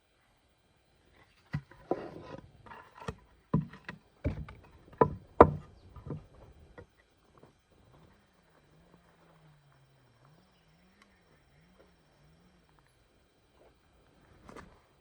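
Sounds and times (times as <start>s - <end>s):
sharp knocks and clatters: 1.6s - 6.9s.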